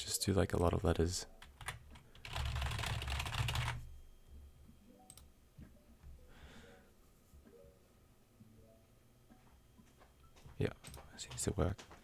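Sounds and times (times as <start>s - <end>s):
rapid typing on computer keyboard: 1.4s - 3.8s.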